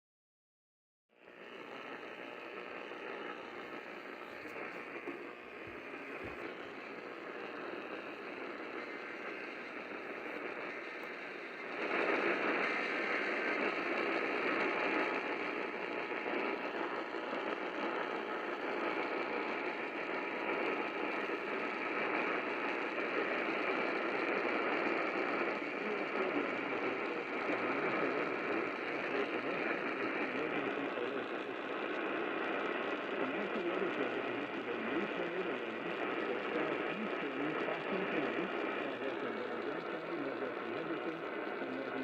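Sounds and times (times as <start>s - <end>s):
radio static hiss: 1.2s - 42.0s.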